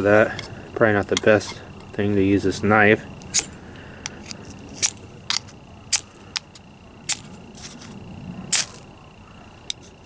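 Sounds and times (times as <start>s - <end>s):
knife scraping fire-starter rod: 0.0s - 2.0s, 3.2s - 8.8s, 9.7s - 10.0s.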